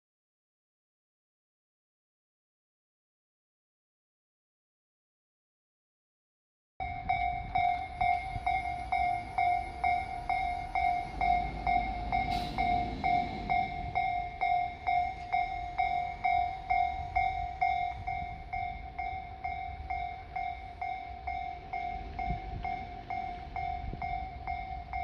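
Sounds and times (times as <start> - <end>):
level-crossing electronic bell: 6.8 - 25.0.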